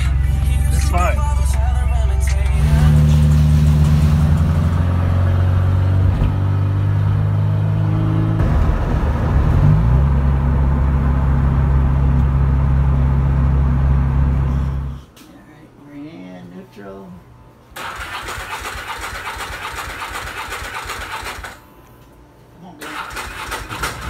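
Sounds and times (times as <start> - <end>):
engine running: 0.0 - 15.1.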